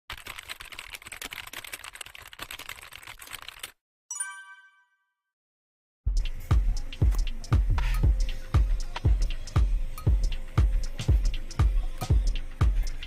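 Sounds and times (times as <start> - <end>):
rapid crackling clicks: 0.1 - 3.8
bright chime: 4.1 - 5.1.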